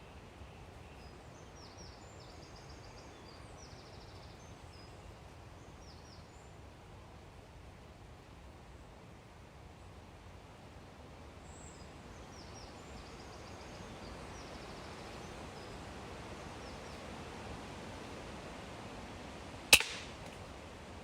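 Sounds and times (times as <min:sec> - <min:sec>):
air rifle shot: 0:19.7 - 0:20.4.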